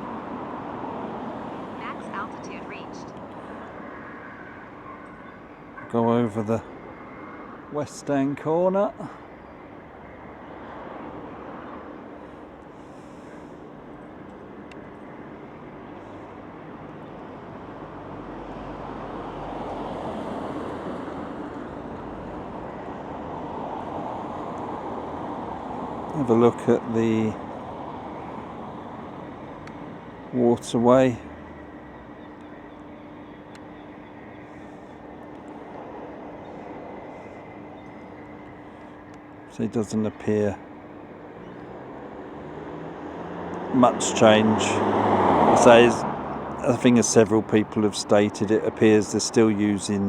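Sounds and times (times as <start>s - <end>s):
rumbling background noise: 1.3s - 3.7s
constant low hum: 21.0s - 42.4s.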